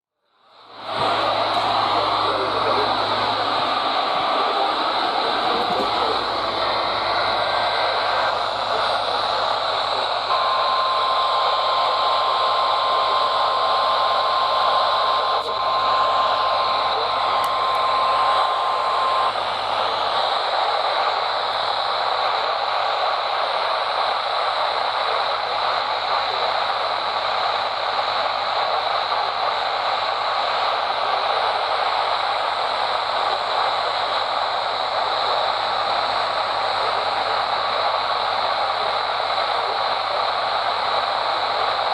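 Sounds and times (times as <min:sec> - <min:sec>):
radio static hiss: 0:00.3 - 0:41.9
faint warning alarm tone: 0:00.6 - 0:20.2.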